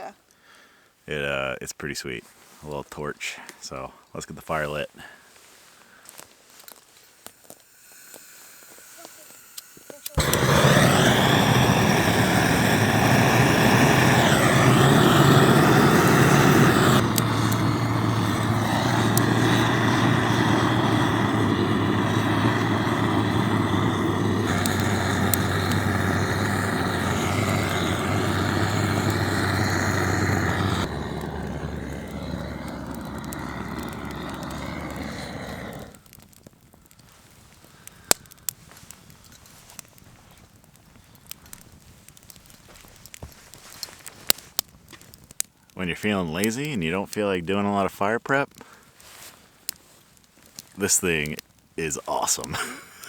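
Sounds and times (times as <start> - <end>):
butane torch flame hiss: 5.0 - 44.4, 50.5 - 53.0.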